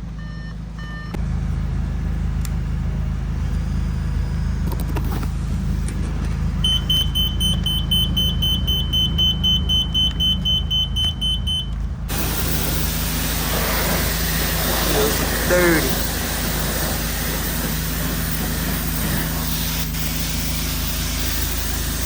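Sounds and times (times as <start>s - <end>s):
steady low hum: 0.0s - 22.0s
rapid electronic beeping: 6.6s - 13.3s, 14.0s - 22.0s
loud spraying hiss: 12.1s - 22.0s.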